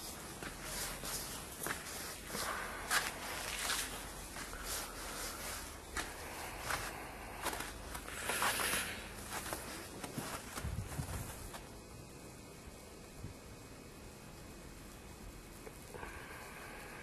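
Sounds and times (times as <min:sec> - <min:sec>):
footsteps crunching through snow: 0:00.0 - 0:11.7.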